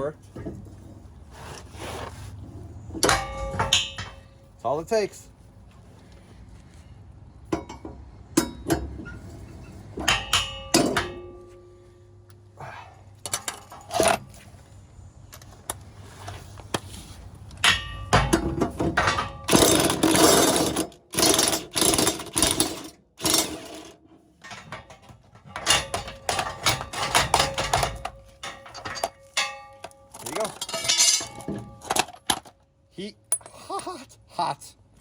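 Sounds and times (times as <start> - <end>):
metal clanking: 2.8 - 4.6, 17.6 - 32.6.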